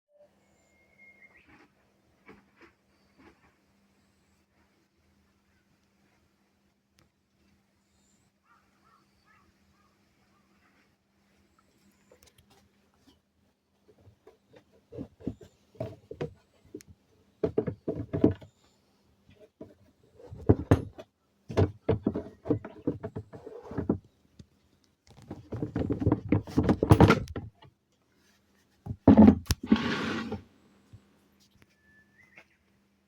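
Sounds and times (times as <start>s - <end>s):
knocks thunks and clatter: 20.3s - 24.0s, 25.3s - 27.6s, 28.9s - 29.5s.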